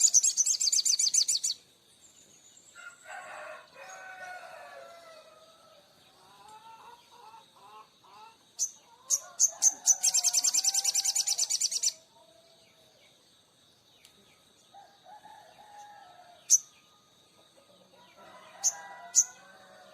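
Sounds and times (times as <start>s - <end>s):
songbird chips and trill: 0.0s - 1.6s, 8.6s - 12.0s.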